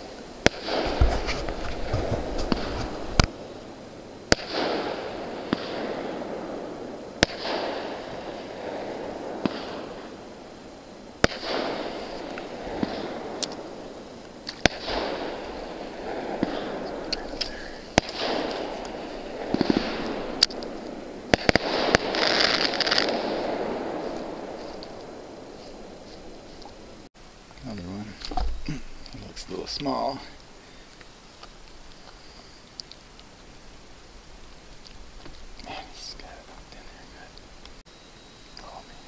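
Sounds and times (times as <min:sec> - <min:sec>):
rumbling echo: 0:00.0 - 0:27.1
fireworks bursting: 0:00.0 - 0:39.0.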